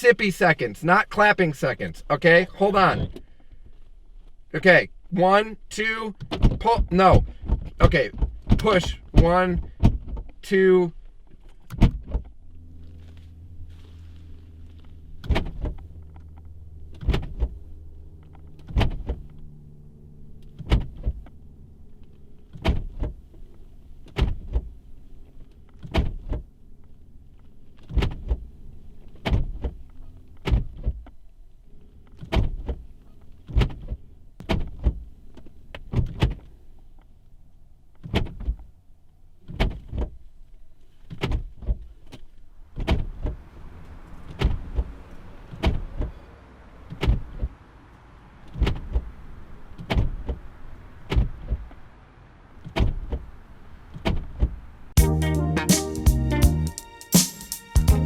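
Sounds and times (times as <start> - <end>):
car door handle clacking: 6.2 - 10.4, 11.6 - 12.3.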